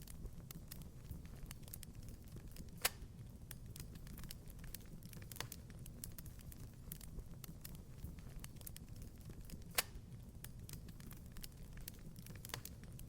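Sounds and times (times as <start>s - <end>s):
wood fire crackling: 0.0s - 13.0s.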